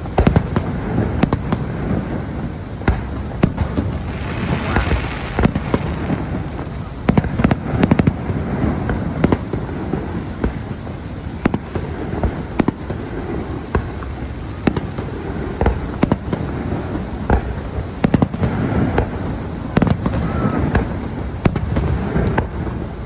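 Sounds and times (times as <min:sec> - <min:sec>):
firework shells bursting: 0:00.0 - 0:10.8.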